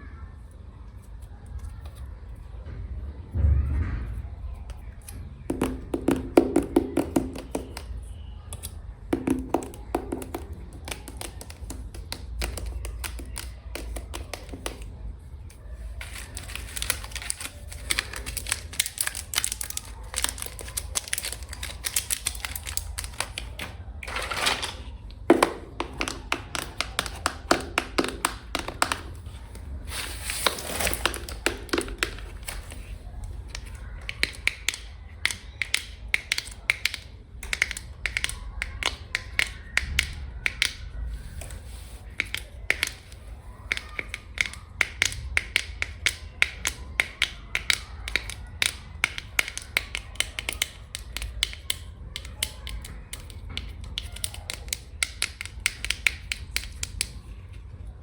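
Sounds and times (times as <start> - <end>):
fingernails tapping hard surface: 5.5 - 7.9.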